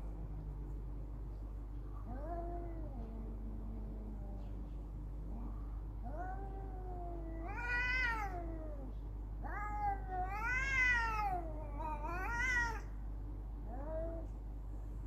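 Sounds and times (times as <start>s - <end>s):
cats yowling: 2.0s - 4.7s, 5.3s - 13.0s, 13.6s - 14.4s.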